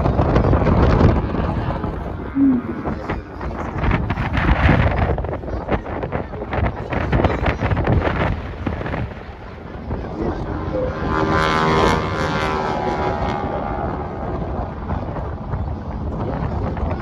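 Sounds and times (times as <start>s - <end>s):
aircraft engine droning: 0.0s - 4.2s, 8.3s - 17.0s
wind buffeting microphone: 0.0s - 17.0s.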